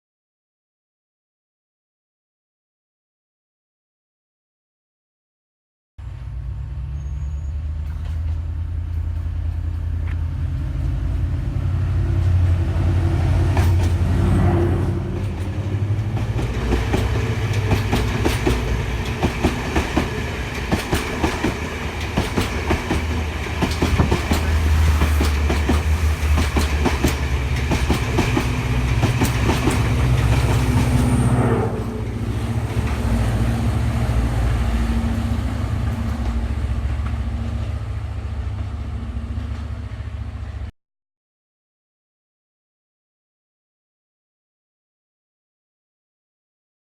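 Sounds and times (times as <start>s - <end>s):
diesel train engine drone: 6.0s - 40.7s
train wheels clattering: 7.6s - 10.2s, 13.4s - 14.1s, 14.8s - 33.5s.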